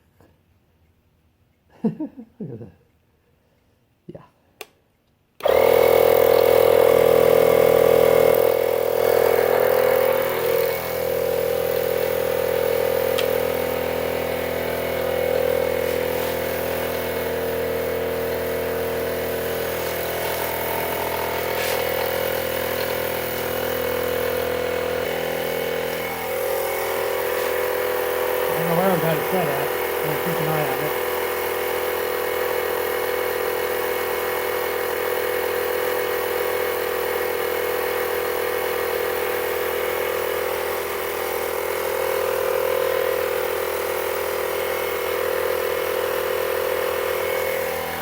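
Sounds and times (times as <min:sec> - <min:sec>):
air compressor buzzing hum: 0:05.4 - 0:48.0.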